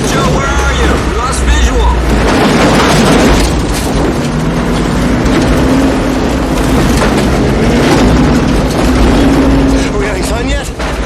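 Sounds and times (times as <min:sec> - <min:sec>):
rushing wind and rain: 0:00.0 - 0:11.0
truck engine: 0:00.0 - 0:11.0.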